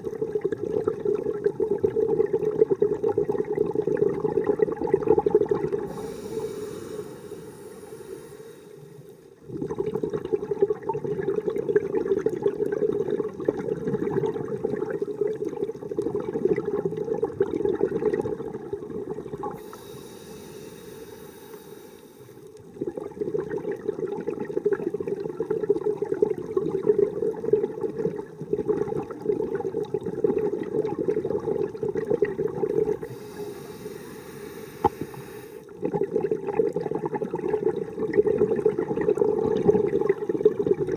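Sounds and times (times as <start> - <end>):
bubbling exhale underwater: 0.0 - 40.9
hissing regulator inhale: 5.8 - 9.4, 19.6 - 22.5, 33.0 - 35.7.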